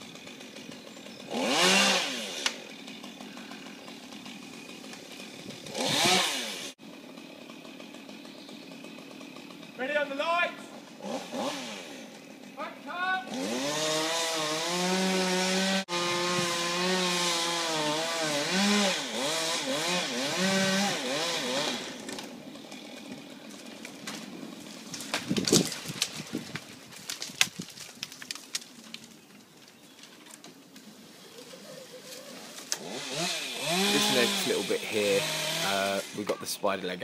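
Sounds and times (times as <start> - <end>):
chainsaw revving and cutting wood: 0.0 - 27.7, 32.1 - 36.5
sharp cracks and knocks: 22.0 - 30.9.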